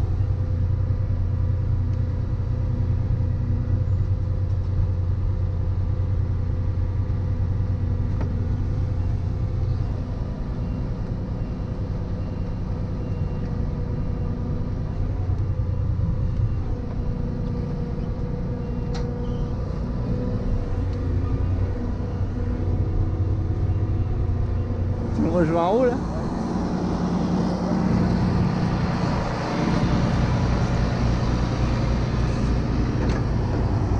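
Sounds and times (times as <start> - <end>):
diesel engine running: 0.0 - 33.9
steady whine: 14.2 - 33.9.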